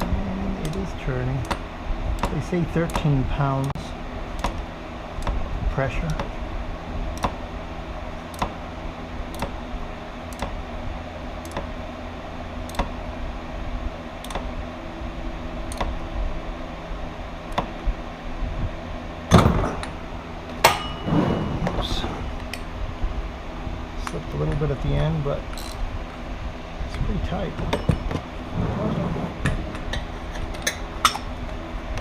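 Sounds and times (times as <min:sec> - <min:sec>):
steady low hum: 0:00.0 - 0:32.0
ratchet wrench clicking: 0:25.5 - 0:25.8.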